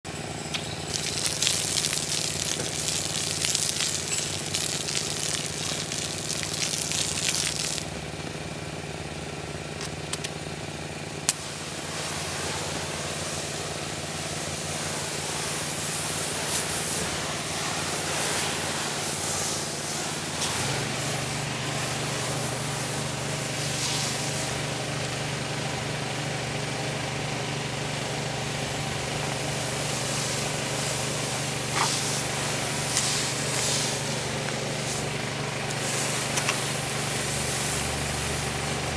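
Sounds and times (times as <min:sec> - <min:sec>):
pressure washer engine running: 0:00.1 - 0:38.9
spray hissing on concrete: 0:00.8 - 0:08.0, 0:11.3 - 0:38.9.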